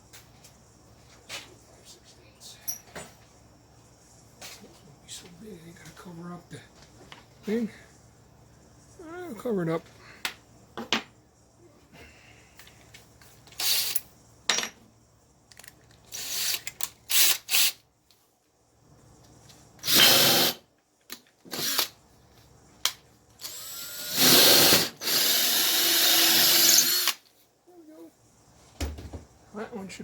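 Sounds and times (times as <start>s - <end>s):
electric drill boring: 16.1s - 17.7s, 19.8s - 20.6s, 21.5s - 21.9s, 23.4s - 27.2s.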